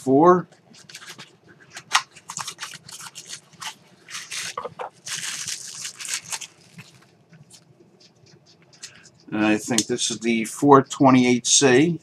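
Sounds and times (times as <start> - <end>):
plastic packaging crinkling: 0.8 - 7.6.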